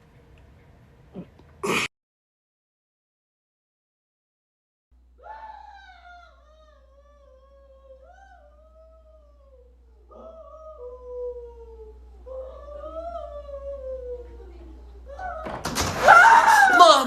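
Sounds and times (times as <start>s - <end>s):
steady low hum: 0.0s - 1.9s, 5.0s - 15.8s
howl-like voice calling: 5.2s - 17.0s.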